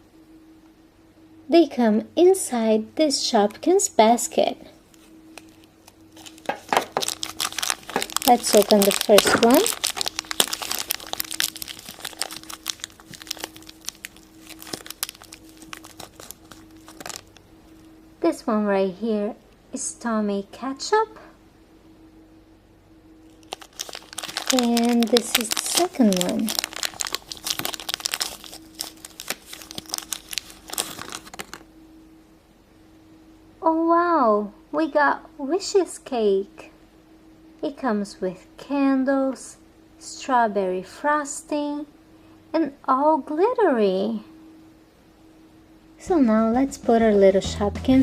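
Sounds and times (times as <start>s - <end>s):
plastic packet crinkling: 5.3s - 17.4s, 23.3s - 31.7s.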